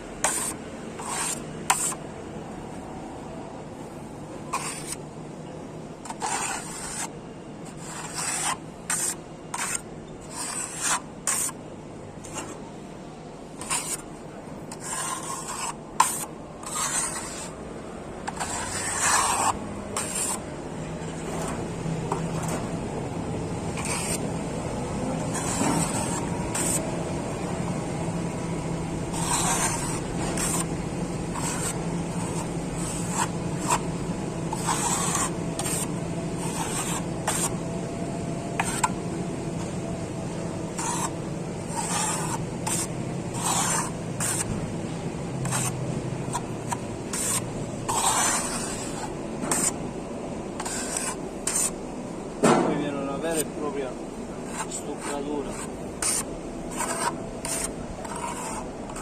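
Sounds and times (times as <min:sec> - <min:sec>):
steady low hum: 0:00.0 - 0:59.0
plastering tool scraping wall: 0:00.2 - 0:02.0, 0:04.5 - 0:05.0, 0:06.0 - 0:11.6, 0:13.6 - 0:14.1, 0:14.7 - 0:17.6, 0:18.2 - 0:20.5, 0:23.7 - 0:24.2, 0:25.1 - 0:26.8, 0:29.1 - 0:30.7, 0:31.3 - 0:33.9, 0:34.5 - 0:37.6, 0:38.6 - 0:39.0, 0:40.7 - 0:44.6, 0:45.4 - 0:49.8, 0:50.6 - 0:51.8, 0:54.4 - 0:59.0.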